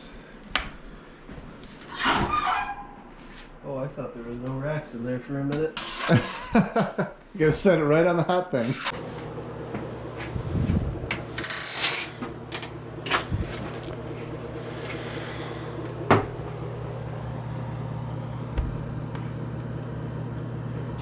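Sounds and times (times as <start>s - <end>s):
steady low hum: 8.9s - 21.0s.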